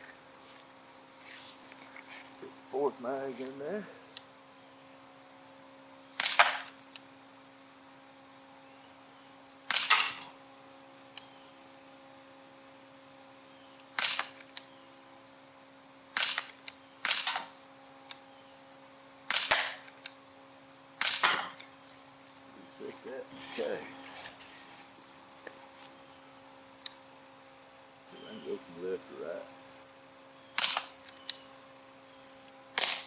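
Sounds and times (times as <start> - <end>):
air pistol shots: 6.2 - 6.7, 9.7 - 10.3, 14.0 - 14.4, 16.2 - 17.5, 19.3 - 19.9, 21.0 - 21.6, 30.6 - 31.0, 32.8 - 33.0.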